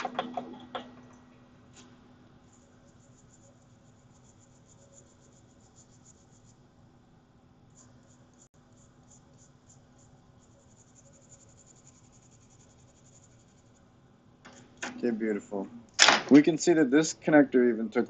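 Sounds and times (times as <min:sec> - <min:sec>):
low steady hum: 0:00.0 - 0:18.0
small brush scrubbing circuit board: 0:02.4 - 0:06.7, 0:07.7 - 0:13.9.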